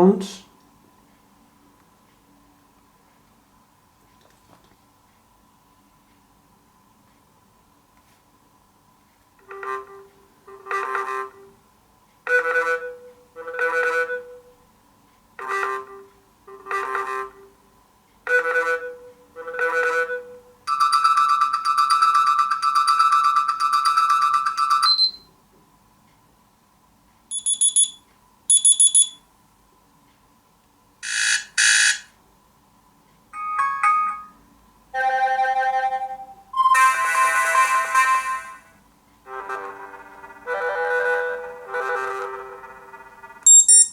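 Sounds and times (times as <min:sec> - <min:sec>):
phone alarm melodies: 0:18.3 - 0:25.3, 0:27.3 - 0:29.2, 0:35.0 - 0:38.7, 0:39.3 - 0:43.9
electronic beeps: 0:24.7 - 0:25.3, 0:27.3 - 0:29.2, 0:43.4 - 0:43.9.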